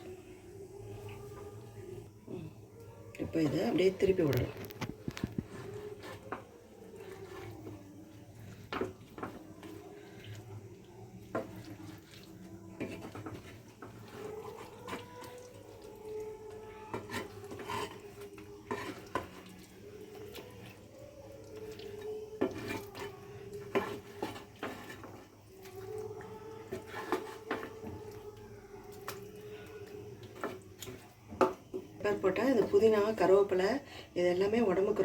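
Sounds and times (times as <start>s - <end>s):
spoon scraping a cooking pan: 4.3s - 16.2s, 16.8s - 20.8s, 21.5s - 28.2s, 30.2s - 33.2s.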